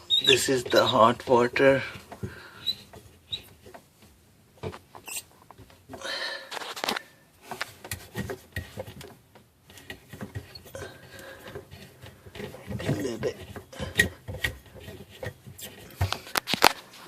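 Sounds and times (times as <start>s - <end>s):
faucet handle squeaks and clicks: 0.0s - 1.2s, 2.6s - 3.7s, 5.0s - 5.3s.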